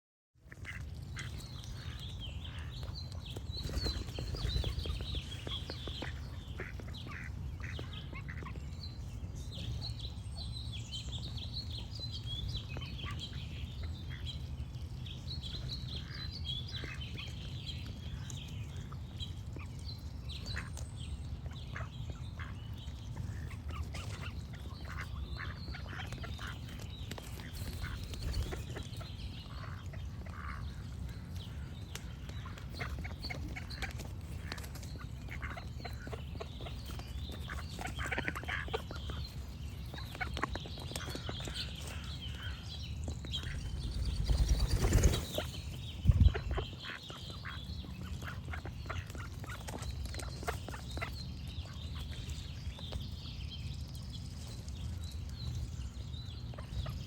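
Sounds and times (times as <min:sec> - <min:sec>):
small birds chirping: 0:00.4 - 0:57.0
ducks quacking: 0:05.9 - 0:08.6, 0:37.5 - 0:39.2, 0:45.2 - 0:51.8
steady low rumble: 0:41.0 - 0:49.9.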